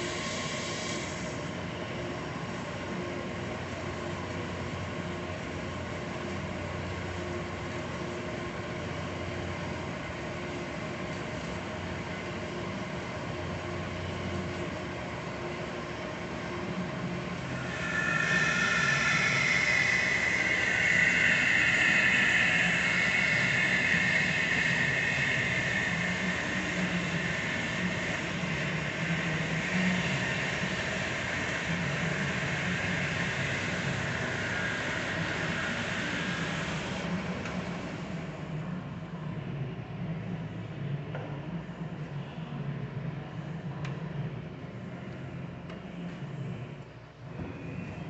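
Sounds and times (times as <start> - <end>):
high-pitched whine: 13.8 - 40.9
bandsaw machine hum: 17.4 - 37.1.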